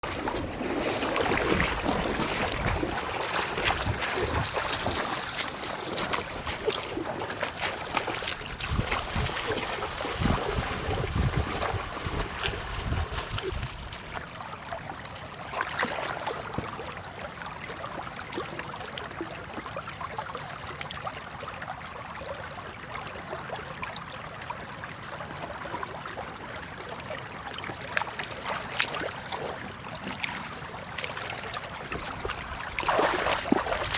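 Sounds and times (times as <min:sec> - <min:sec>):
water sloshing and splashing: 0:00.0 - 0:19.2, 0:27.5 - 0:33.9.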